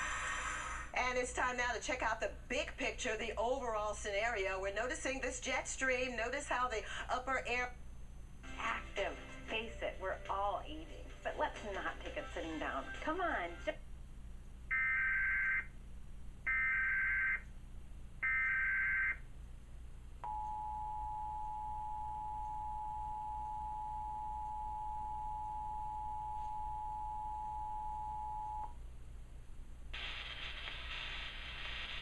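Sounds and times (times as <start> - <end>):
steady two-tone attention signal: 20.2 - 28.7.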